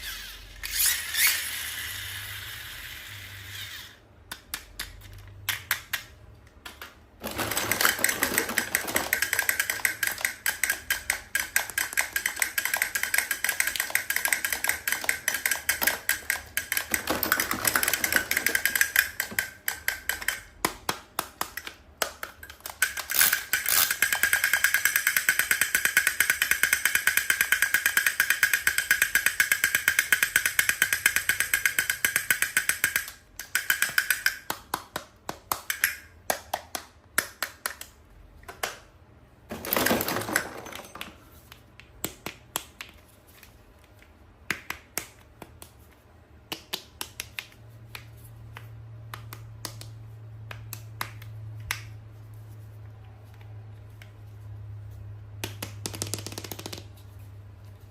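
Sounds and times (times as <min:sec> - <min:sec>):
clicks and taps: 0:07.6 - 0:38.9, 0:39.7 - 0:51.9, 0:55.3 - 0:57.0.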